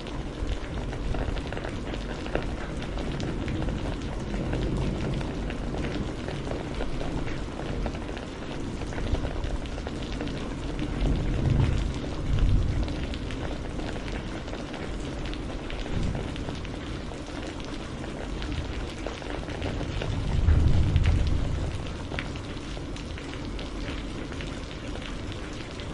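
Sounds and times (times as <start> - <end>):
rain pattering: 0.0 - 25.9
low rumble: 19.9 - 22.5.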